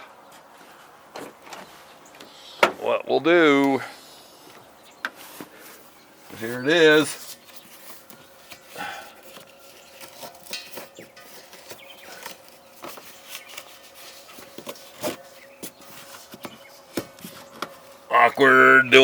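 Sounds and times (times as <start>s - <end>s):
propane tank and fitting clicks: 7.4s - 16.6s.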